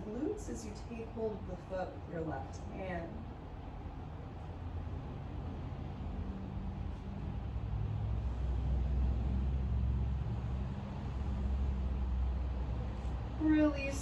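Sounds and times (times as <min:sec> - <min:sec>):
vehicle engine rumbling: 0:03.0 - 0:14.0.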